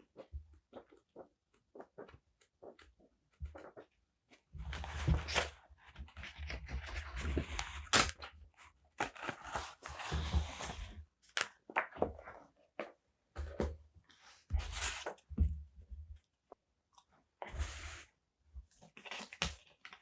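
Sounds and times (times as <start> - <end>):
paper rustling and crinkling: 9.0 - 12.0.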